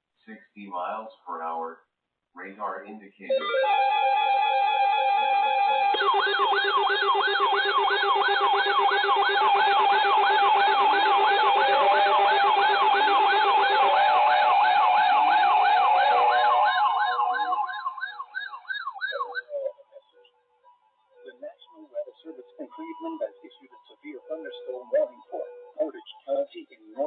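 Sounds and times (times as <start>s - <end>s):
electronic siren yelp: 3.3s - 20.2s
steady electronic tones: 3.4s - 19.7s.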